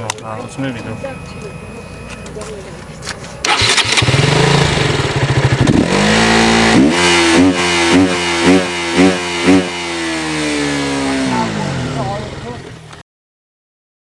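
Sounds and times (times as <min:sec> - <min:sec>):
motorcycle engine revving: 0:03.4 - 0:13.0.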